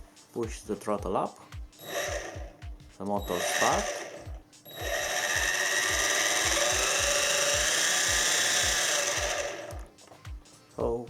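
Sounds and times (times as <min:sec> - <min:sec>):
drone propellers whining: 0:01.8 - 0:10.0.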